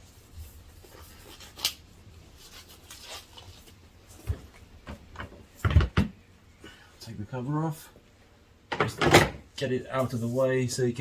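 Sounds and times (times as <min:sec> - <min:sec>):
rubbing and rustling: 0:00.0 - 0:05.7, 0:09.8 - 0:10.7.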